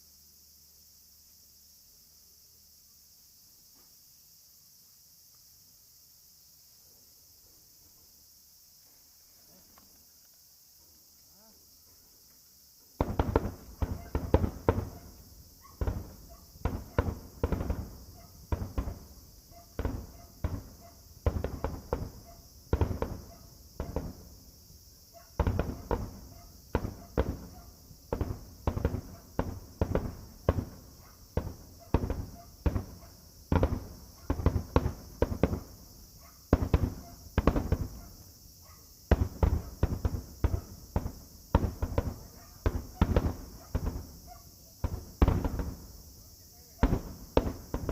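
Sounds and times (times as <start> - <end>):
fireworks bursts booming: 13.0 - 47.9.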